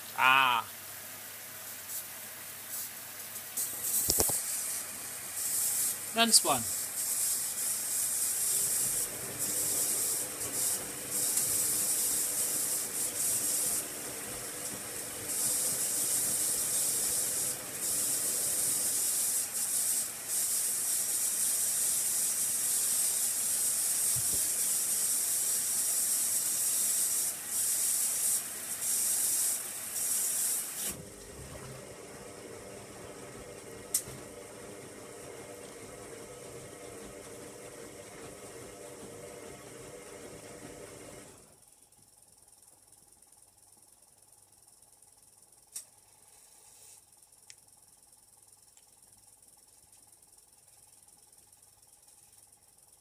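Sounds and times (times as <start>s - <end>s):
water hissing through inlet valve: 3.6s - 30.9s.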